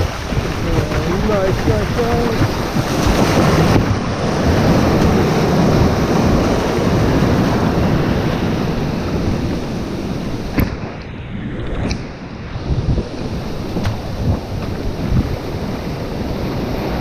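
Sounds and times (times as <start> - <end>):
waves and surf washing: 0.0 - 17.0
wind buffeting microphone: 0.0 - 17.0.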